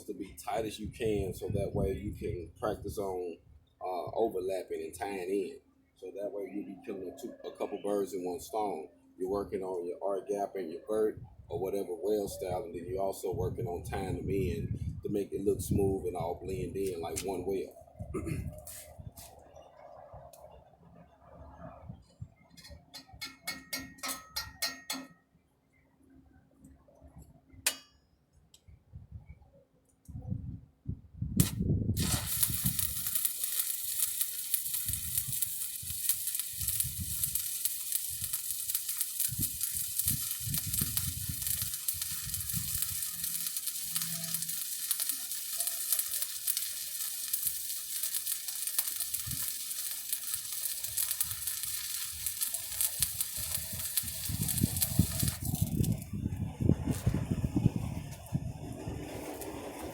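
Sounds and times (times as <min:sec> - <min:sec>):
welding arc crackling and sizzling: 0:31.4 - 0:59.9.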